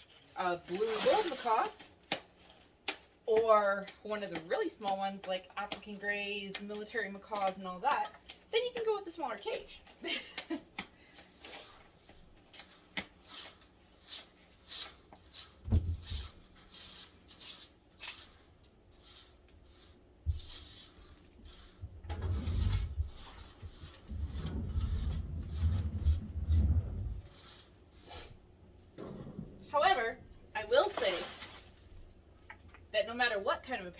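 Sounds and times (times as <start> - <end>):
heavy low bumping: 24.0 - 27.3.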